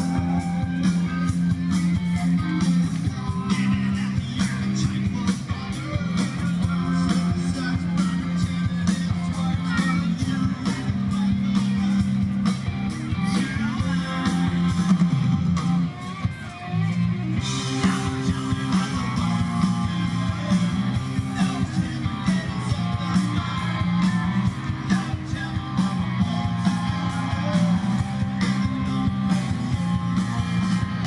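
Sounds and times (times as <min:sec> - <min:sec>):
live rock band playing: 0:00.0 - 0:31.0
person singing: 0:02.0 - 0:12.3, 0:13.1 - 0:15.3, 0:17.6 - 0:29.2.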